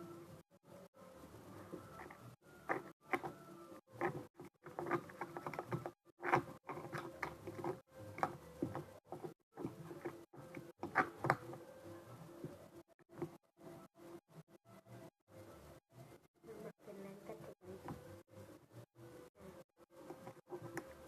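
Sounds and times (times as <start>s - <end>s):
slime squelching while stirred: 3.9s - 11.3s.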